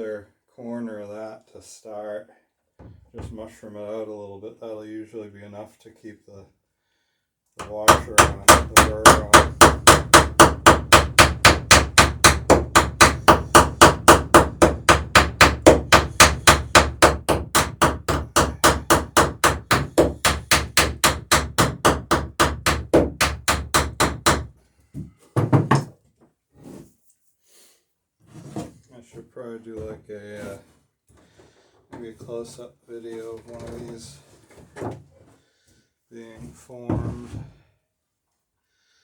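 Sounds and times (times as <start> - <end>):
hammer blows on copper rivet: 7.6 - 24.5.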